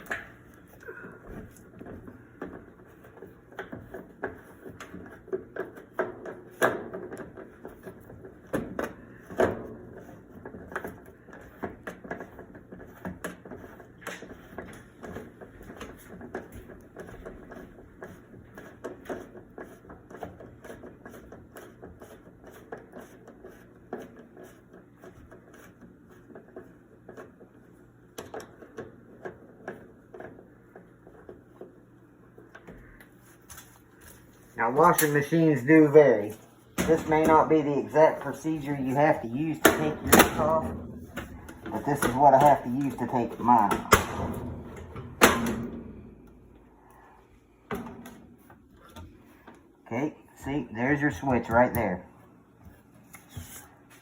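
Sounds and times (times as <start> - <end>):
hand tools knocking on metal panels: 38.9 - 46.2.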